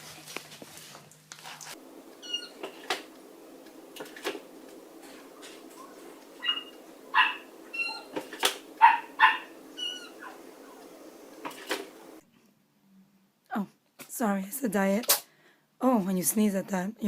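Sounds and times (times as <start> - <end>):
thin high-pitched squeaks: 2.2 - 3.0, 5.0 - 10.8
dog vocalizing: 5.0 - 11.0.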